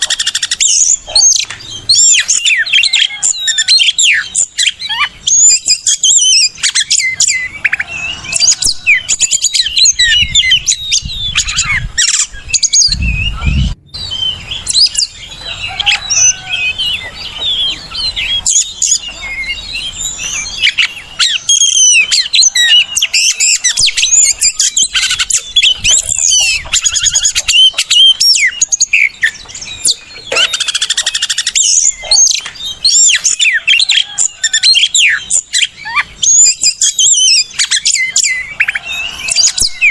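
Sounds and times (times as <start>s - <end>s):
magpie-robin song: 0.0s - 39.9s
low rumble: 12.8s - 15.0s.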